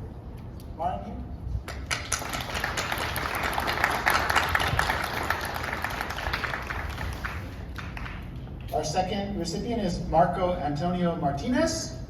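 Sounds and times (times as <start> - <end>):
audience applauding: 1.9 - 8.4.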